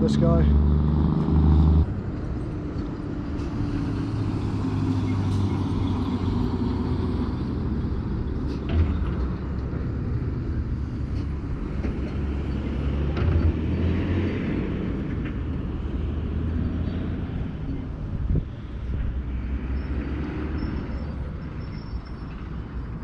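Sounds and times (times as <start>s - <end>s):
wind buffeting microphone: 17.1s - 19.2s.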